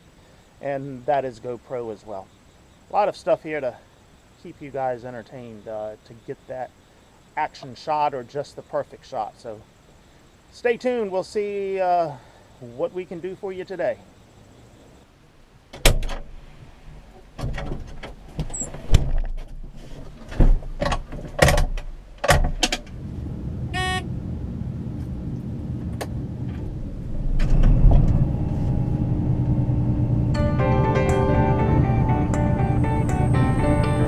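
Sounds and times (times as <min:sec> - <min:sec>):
vehicle door shutting: 0:15.7 - 0:23.0
vehicle engine starting and running: 0:21.3 - 0:34.0.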